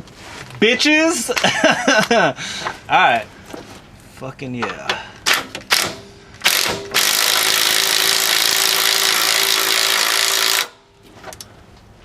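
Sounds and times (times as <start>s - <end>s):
power tool tightening nut: 6.4s - 10.7s.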